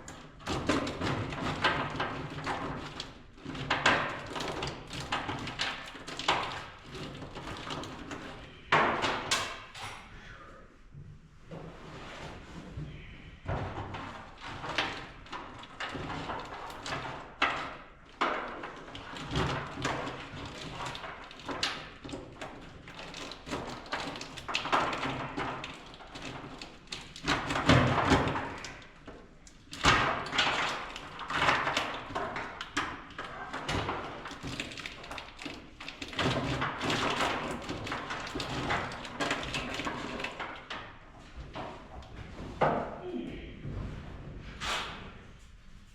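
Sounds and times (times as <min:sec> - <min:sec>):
tools clicking and knocking: 0:00.5 - 0:10.1.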